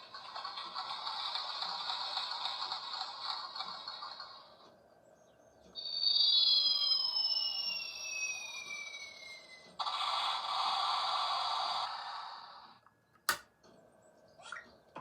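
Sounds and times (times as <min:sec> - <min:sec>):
sharp click: 0:13.2 - 0:13.5.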